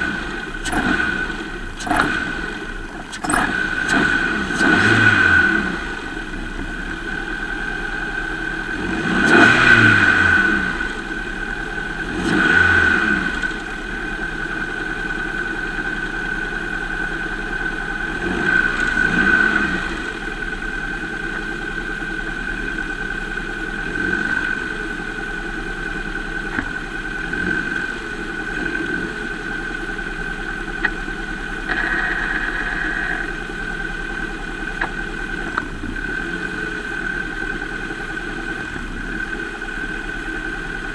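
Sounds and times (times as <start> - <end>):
car engine idling and revving: 0.0 - 40.9
steady high whine: 29.7 - 40.9.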